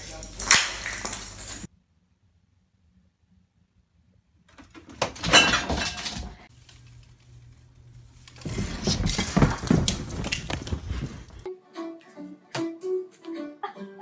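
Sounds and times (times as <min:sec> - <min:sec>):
objects crashing and clattering: 0:04.6 - 0:06.5.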